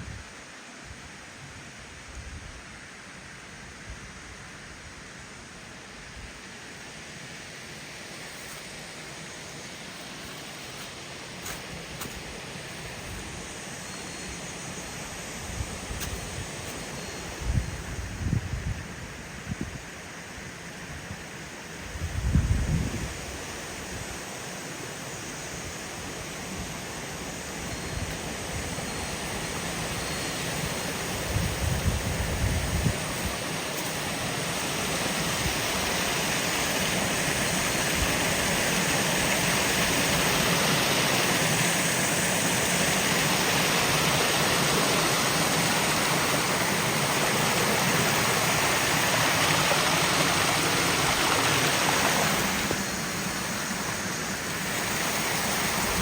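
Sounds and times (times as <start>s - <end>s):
waterfall roaring: 33.0s - 56.0s.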